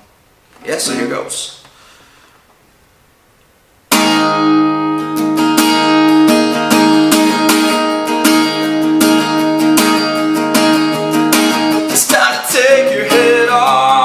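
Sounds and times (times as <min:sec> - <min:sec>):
acoustic guitar strumming chords: 0:03.9 - 0:14.0.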